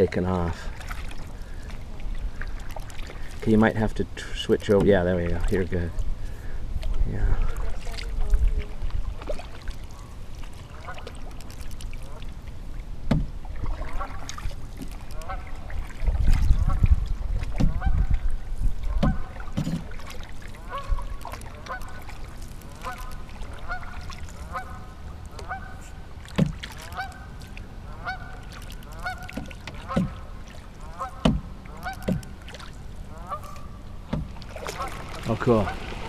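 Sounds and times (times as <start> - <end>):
dull knocks: 13.1 - 13.3, 18.9 - 19.9, 29.4 - 30.2, 31.2 - 32.3, 34.1 - 34.4
geese honking: 15.2 - 15.7, 18.9 - 19.5, 20.6 - 22.1, 22.7 - 26.0, 26.8 - 32.2, 33.1 - 33.7, 34.6 - 36.0.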